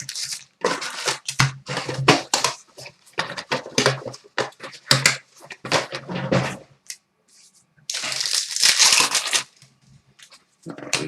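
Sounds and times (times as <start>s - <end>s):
wrappers crinkling and tearing: 0.0s - 2.4s, 7.9s - 9.6s.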